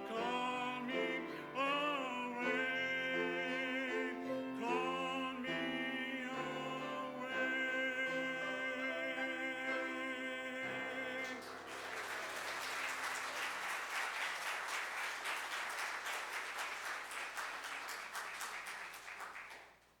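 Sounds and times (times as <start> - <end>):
man singing with vibrato: 0.0 - 11.8
piano: 0.0 - 13.5
congregation applauding: 10.6 - 20.0.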